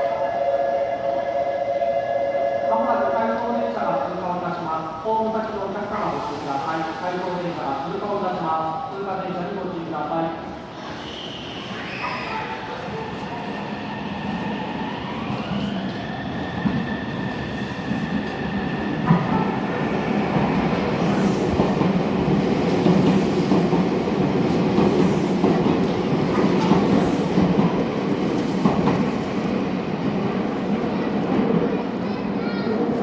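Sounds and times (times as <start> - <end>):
train wheels rumbling on rail: 10.4 - 33.0.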